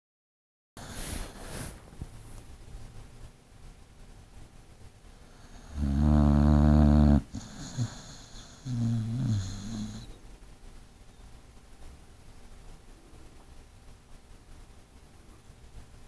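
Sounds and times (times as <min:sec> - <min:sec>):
person snoring: 0:05.4 - 0:10.2.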